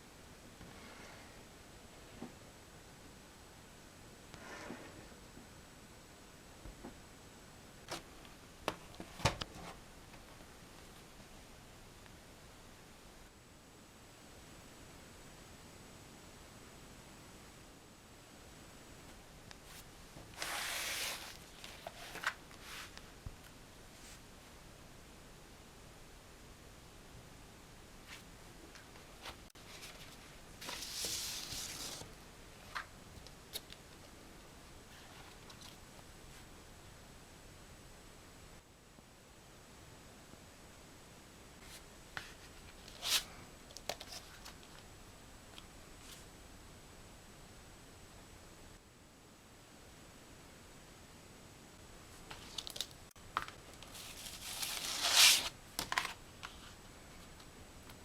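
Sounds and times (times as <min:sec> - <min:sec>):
record sleeve rustling: 0:19.6 - 0:23.1, 0:28.1 - 0:34.1, 0:41.6 - 0:44.9, 0:52.2 - 0:58.0
packaging rustling and crinkling: 0:52.3 - 0:56.6.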